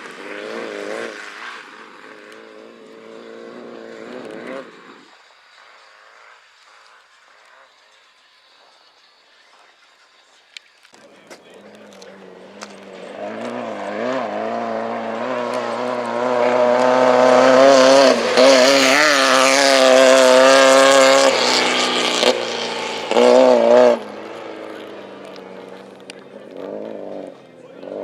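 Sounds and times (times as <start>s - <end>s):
race car engine passing: 0.0s - 6.4s, 11.0s - 28.0s.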